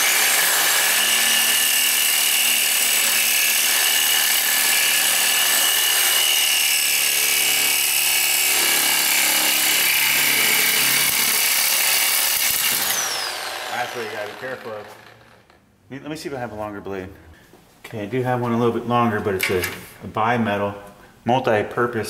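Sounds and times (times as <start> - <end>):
reciprocating saw cutting pipe: 0.0 - 15.6.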